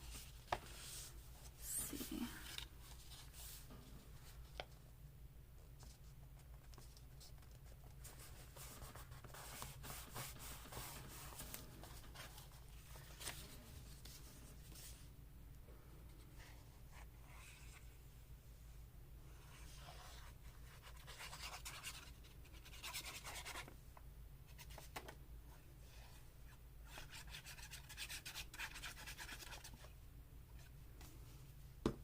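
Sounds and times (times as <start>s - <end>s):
paper rubbing and scratching: 6.6s - 13.5s.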